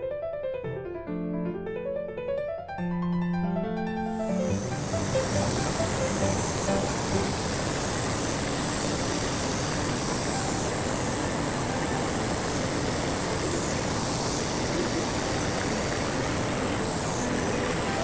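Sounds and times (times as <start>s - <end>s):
steady high hiss: 4.0s - 18.0s
waterfall and stream rushing: 4.3s - 18.0s.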